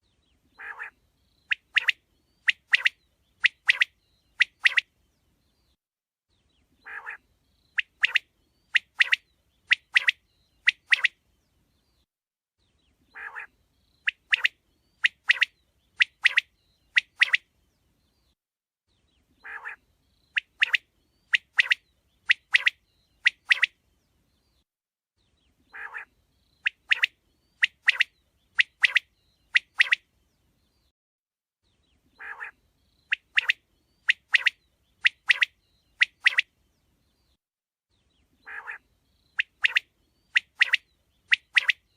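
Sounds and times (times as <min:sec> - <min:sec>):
quail calling: 0:00.6 - 0:04.8, 0:06.8 - 0:07.2, 0:13.1 - 0:13.5, 0:19.4 - 0:19.8, 0:25.7 - 0:26.1, 0:32.2 - 0:36.4, 0:38.4 - 0:38.8.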